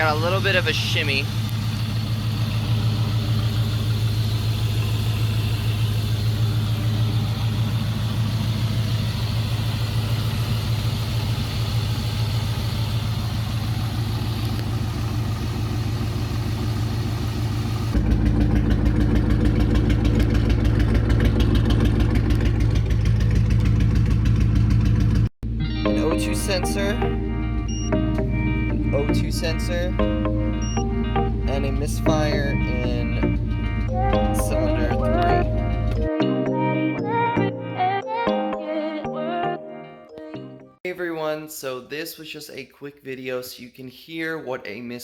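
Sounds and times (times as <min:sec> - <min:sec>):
misfiring car engine idling: 0:00.0 - 0:25.8, 0:31.3 - 0:36.0.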